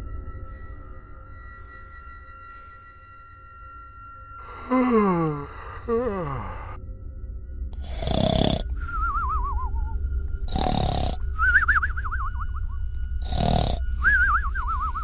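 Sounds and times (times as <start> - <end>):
steady low hum: 0.0 - 15.0
cartoon snoring: 4.5 - 6.8, 7.8 - 8.8, 10.4 - 11.6, 13.2 - 14.1
falling whistle: 8.8 - 10.0, 11.4 - 12.8, 14.0 - 15.0.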